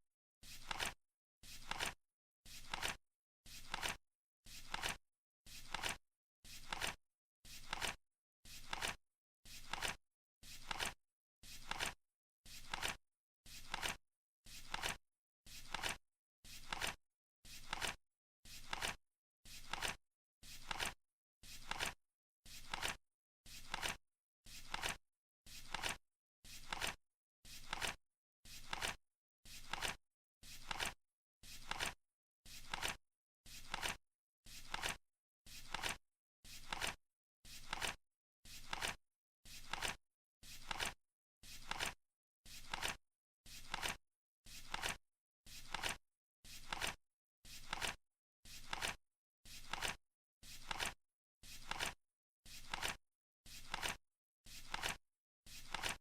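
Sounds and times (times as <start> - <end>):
flip clock cards flipping: 0.6 - 2.0, 2.6 - 3.0, 3.6 - 4.0, 4.7 - 5.0, 5.6 - 6.0, 6.6 - 7.0, 7.6 - 8.0, 8.6 - 9.0, 9.6 - 10.0, 10.6 - 11.0, 11.6 - 12.0, 12.6 - 13.0, 13.6 - 14.0, 14.7 - 15.0, 15.7 - 16.0, 16.6 - 17.0, 17.6 - 18.0, 18.6 - 19.0, 19.6 - 20.0, 20.6 - 21.0, 21.6 - 22.0, 22.6 - 23.0, 23.6 - 24.0, 24.7 - 25.0, 25.7 - 26.0, 26.6 - 27.0, 27.6 - 28.0, 28.6 - 29.0, 29.6 - 30.0, 30.6 - 31.0, 31.6 - 32.0, 32.6 - 33.0, 33.6 - 34.0, 34.7 - 35.0, 35.7 - 36.0, 36.6 - 37.0, 37.6 - 38.0, 38.6 - 39.0, 39.6 - 40.0, 40.6 - 41.0, 41.6 - 42.0, 42.6 - 43.0, 43.6 - 44.0, 44.7 - 45.0, 45.7 - 46.0, 46.6 - 47.0, 47.6 - 48.0, 48.6 - 49.0, 49.6 - 50.0, 50.6 - 51.0, 51.6 - 52.0, 52.6 - 53.0, 53.6 - 54.0, 54.7 - 55.0, 55.7 - 56.0.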